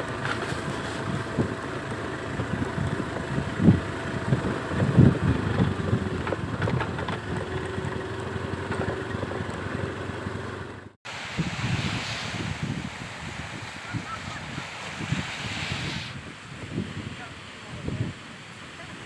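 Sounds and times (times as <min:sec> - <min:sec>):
noisy rumble: 0:00.0 - 0:19.0
wind buffeting microphone: 0:02.2 - 0:09.1, 0:11.1 - 0:19.0.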